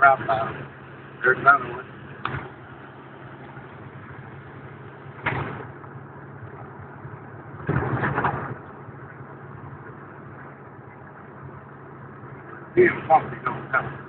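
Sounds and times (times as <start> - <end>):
truck engine drone in cab: 0.0 - 14.0
sudden bang: 5.2 - 5.8.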